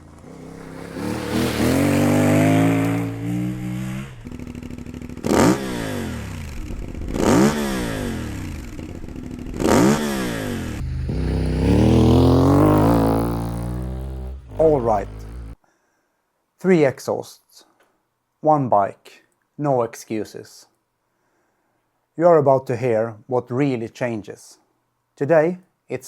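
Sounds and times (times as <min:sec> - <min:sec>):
motorcycle engine revving: 0:00.0 - 0:15.6.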